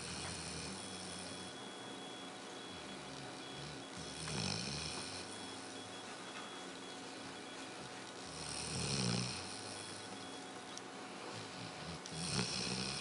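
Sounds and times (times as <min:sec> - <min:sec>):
pet snoring: 0:00.0 - 0:01.6, 0:02.7 - 0:05.9, 0:08.2 - 0:10.4, 0:11.3 - 0:13.0.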